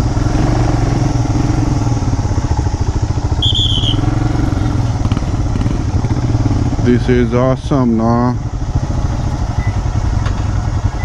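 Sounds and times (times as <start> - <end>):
motorcycle engine running: 0.0 - 11.0
brief high whistle: 3.3 - 4.1.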